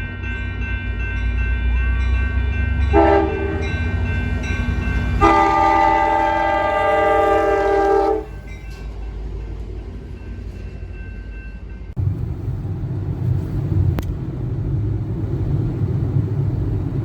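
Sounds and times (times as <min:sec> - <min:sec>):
air horn blasts: 0:02.9 - 0:03.7, 0:05.2 - 0:08.4
low rumble: 0:11.9 - 0:17.0.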